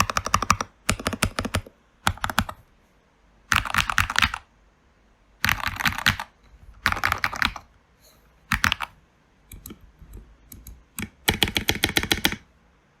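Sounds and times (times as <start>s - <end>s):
typing on mechanical keyboard: 0.0s - 2.6s, 3.5s - 4.5s, 5.4s - 7.7s, 8.5s - 9.8s, 10.5s - 12.5s.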